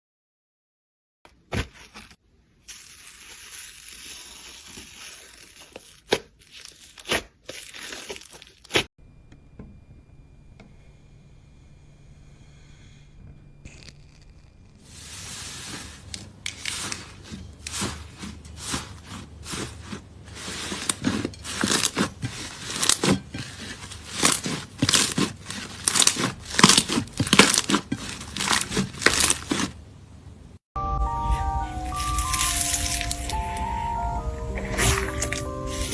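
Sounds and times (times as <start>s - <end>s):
crunchy material crunching: 1.3s - 8.9s, 13.6s - 29.8s, 31.8s - 33.5s, 34.5s - 35.9s.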